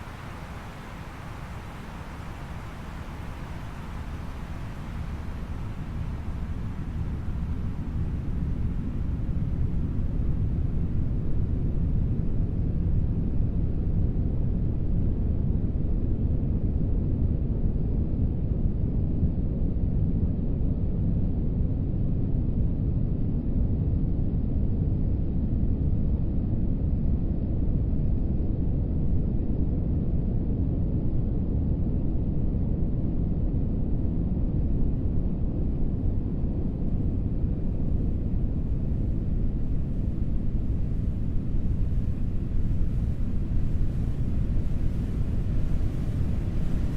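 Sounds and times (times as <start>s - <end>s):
faint hiss: 0.0s - 10.6s, 39.2s - 46.9s
muffled wind and surf rumble: 0.0s - 46.9s.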